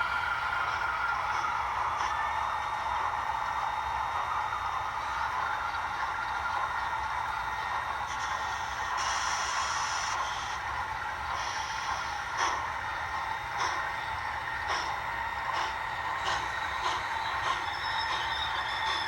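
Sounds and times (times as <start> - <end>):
model train motor and wheels: 0.0 - 19.0.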